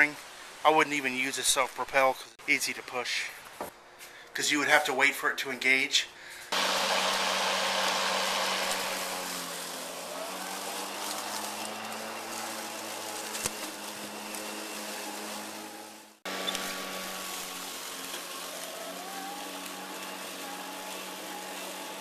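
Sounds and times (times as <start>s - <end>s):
electric lawn mower cutting grass: 6.5s - 22.0s.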